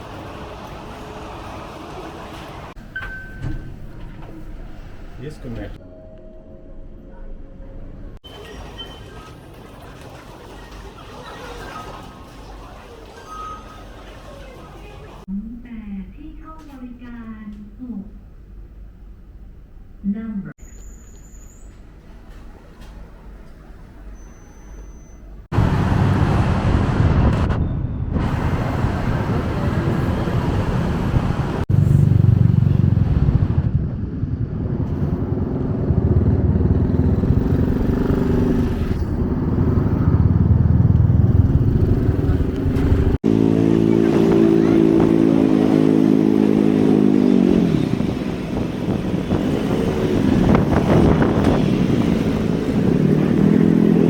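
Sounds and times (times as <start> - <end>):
motorcycle engine running: 31.4 - 54.0.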